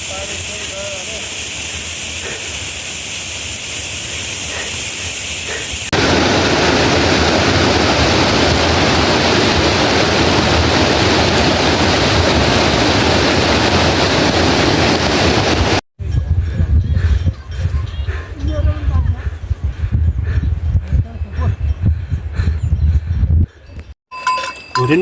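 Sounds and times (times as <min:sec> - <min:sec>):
river water rushing: 0:06.0 - 0:15.8.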